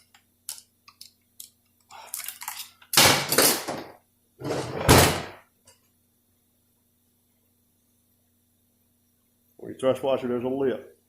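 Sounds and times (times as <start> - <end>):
metal parts clunking and scraping: 2.1 - 5.4.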